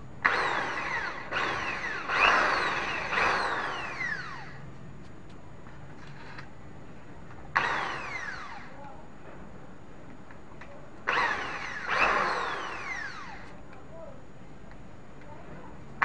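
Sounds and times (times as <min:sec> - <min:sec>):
power tool motor whining: 0:00.2 - 0:04.6, 0:07.6 - 0:08.7, 0:11.1 - 0:13.6.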